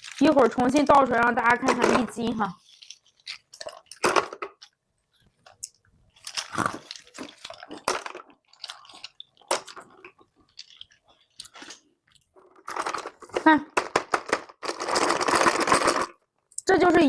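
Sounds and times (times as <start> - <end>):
nuts clattering: 6.2 - 11.8, 12.5 - 16.2.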